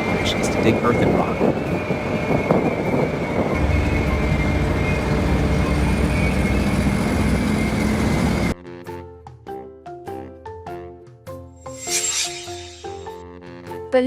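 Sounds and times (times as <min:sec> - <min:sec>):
high mechanical squeal: 0:11.6 - 0:13.2.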